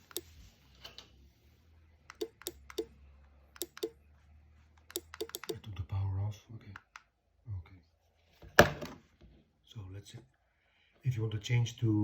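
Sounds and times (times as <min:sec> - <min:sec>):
relay module clicks: 0:04.8 - 0:05.6.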